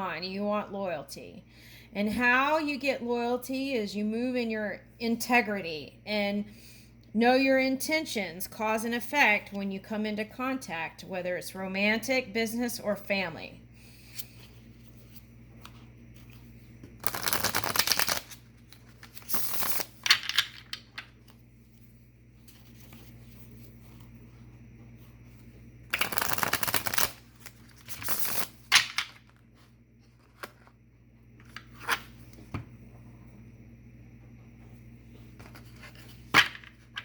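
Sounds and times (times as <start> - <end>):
cards being riffle shuffled: 14.1 - 21.4, 25.9 - 30.7
cards flicking and snapping: 17.0 - 21.1, 25.9 - 29.3.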